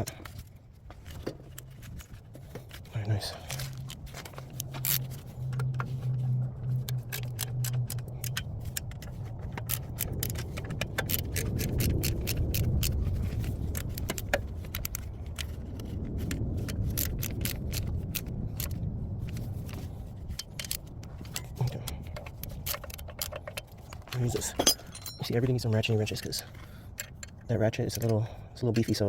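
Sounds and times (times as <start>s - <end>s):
low hum: 0.0s - 27.5s
metal hand tools clinking: 24.2s - 25.8s.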